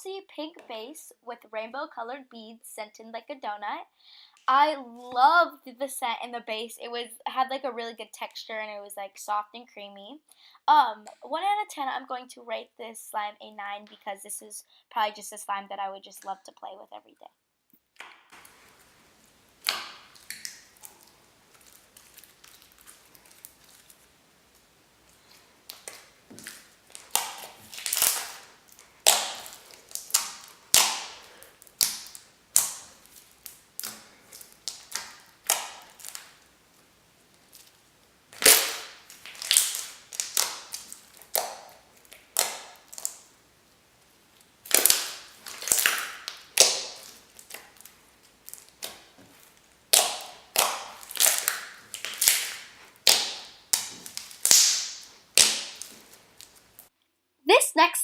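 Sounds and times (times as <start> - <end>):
slime squishing and popping: 18.0 - 36.6, 37.4 - 43.4, 44.3 - 56.8.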